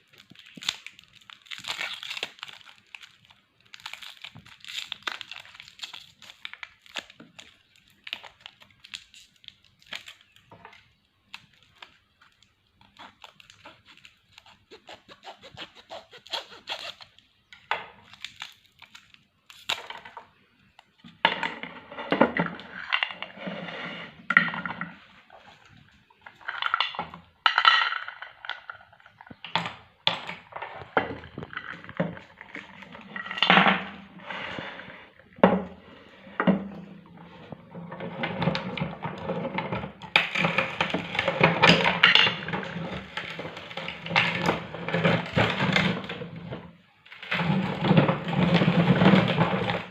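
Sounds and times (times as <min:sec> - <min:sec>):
meat grinder crunching candy: 0:12.8 - 0:17.1, 0:47.2 - 0:49.9.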